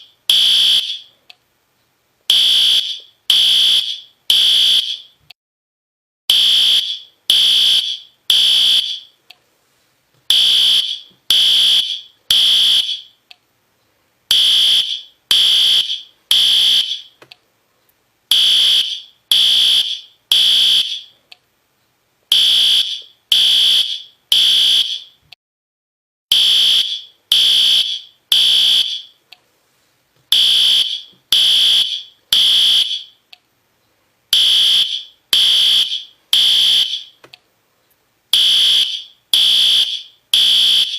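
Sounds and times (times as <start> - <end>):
fire alarm high-pitched beeps: 0.3 - 1.1, 2.3 - 5.2, 6.3 - 9.2, 10.3 - 13.2, 14.3 - 17.2, 18.3 - 21.2, 22.3 - 25.2, 26.3 - 29.2, 30.3 - 33.2, 34.4 - 37.2, 38.4 - 40.9.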